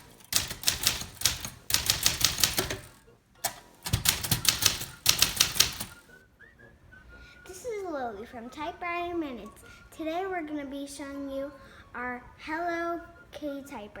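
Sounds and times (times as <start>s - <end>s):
typewriter keystrokes: 0.0s - 6.1s.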